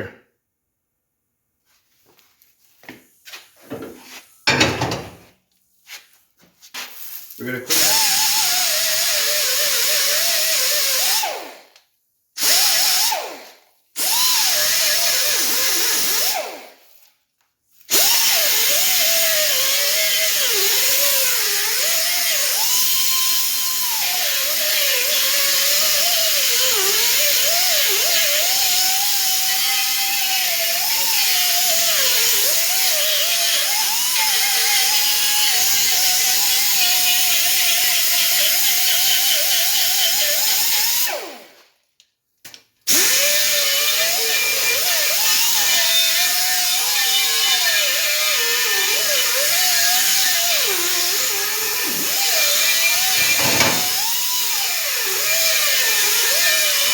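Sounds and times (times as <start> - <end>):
power tool wire brush spinning: 51.6 - 54.2.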